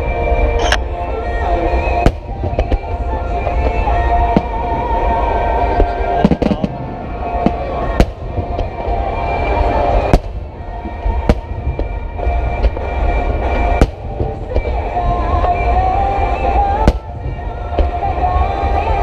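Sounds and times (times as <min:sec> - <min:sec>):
low rumble: 0:00.0 - 0:19.0
music: 0:00.0 - 0:19.0
firework shells bursting: 0:10.0 - 0:18.1.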